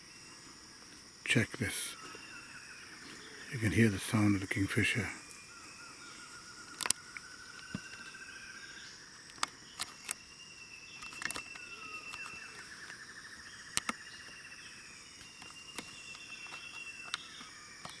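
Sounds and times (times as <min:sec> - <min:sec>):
high insect hum: 0:00.0 - 0:18.0.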